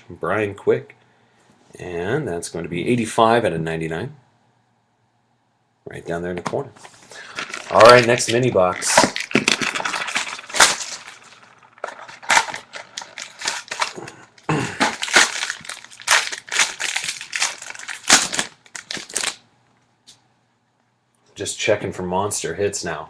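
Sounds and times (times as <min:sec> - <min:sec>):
cards crackling and snapping: 0:07.1 - 0:19.4
cardboard box tearing: 0:07.4 - 0:14.0, 0:14.8 - 0:19.3.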